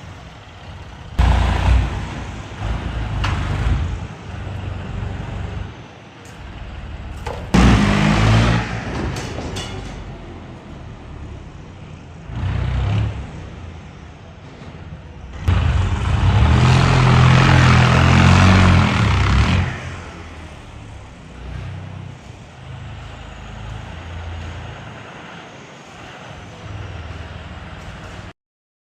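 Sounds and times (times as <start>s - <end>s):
tractor diesel engine revving: 0.0s - 28.3s.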